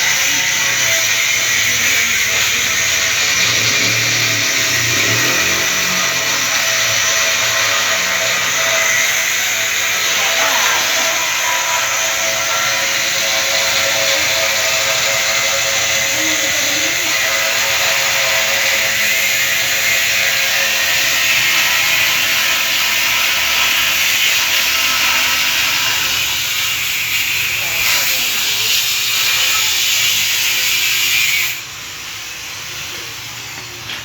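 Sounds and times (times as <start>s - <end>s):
angle grinder cutting: 0.0s - 34.0s.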